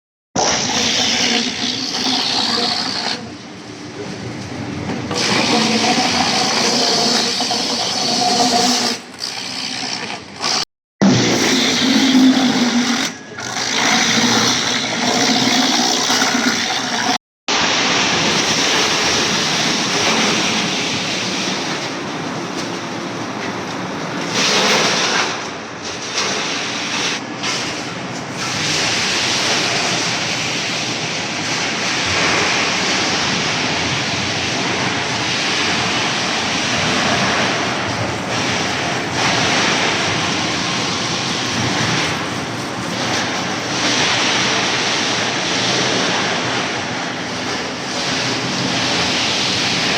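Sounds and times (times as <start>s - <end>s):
wood-processing machinery running: 0.5s - 49.9s.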